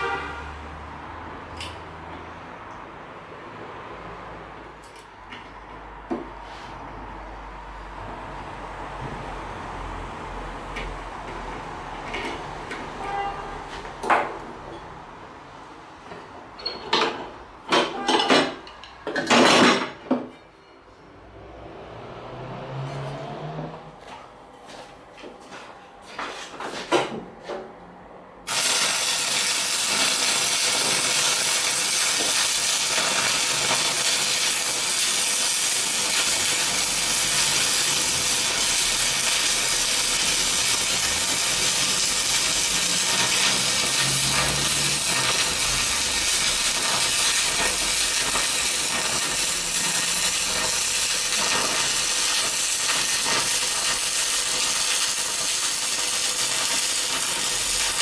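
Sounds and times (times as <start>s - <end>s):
belt grinder hissing: 28.5s - 58.0s.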